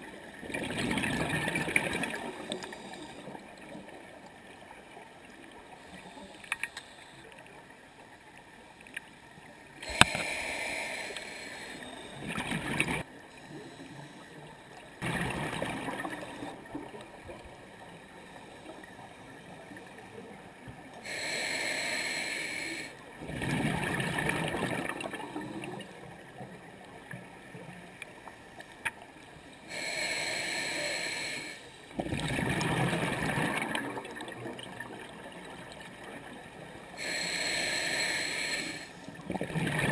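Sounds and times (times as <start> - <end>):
exhaled bubbles: 0.4 - 2.9, 11.9 - 13.1, 15.0 - 17.5, 23.2 - 25.9, 32.0 - 36.4, 39.2 - 39.9
hissing regulator inhale: 2.1 - 3.4, 5.8 - 7.4, 9.8 - 12.4, 13.3 - 14.5, 18.0 - 19.5, 21.0 - 23.0, 29.4 - 31.9, 36.9 - 39.2.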